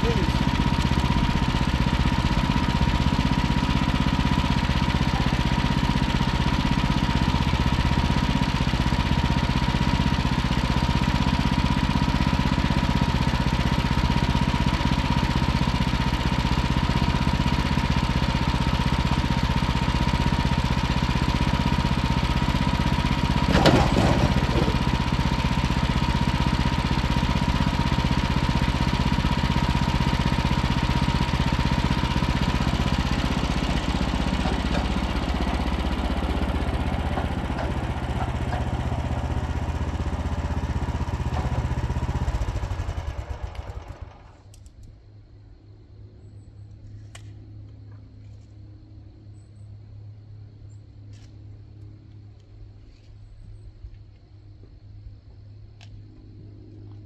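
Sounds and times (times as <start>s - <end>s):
constant whine: 0.0s - 8.3s
sawmill engine running: 0.0s - 44.6s.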